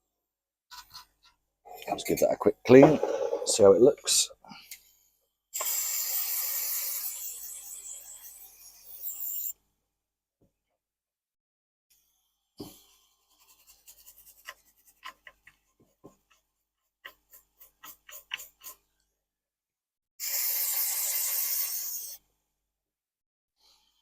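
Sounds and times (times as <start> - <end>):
brush scrubbing circuit board: 17.0 - 18.8.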